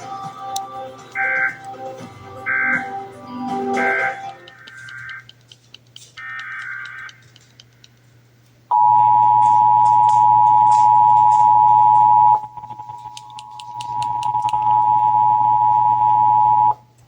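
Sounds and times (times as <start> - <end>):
two-tone attention signal: 1.2 - 1.6, 3.8 - 5.2, 8.7 - 13.1, 13.8 - 16.8.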